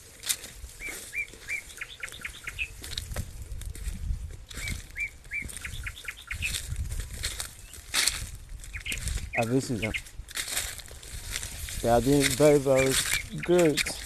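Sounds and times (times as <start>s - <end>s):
bird singing whistled notes: 0.8s - 2.8s, 4.6s - 6.6s, 8.7s - 10.1s, 12.7s - 14.0s.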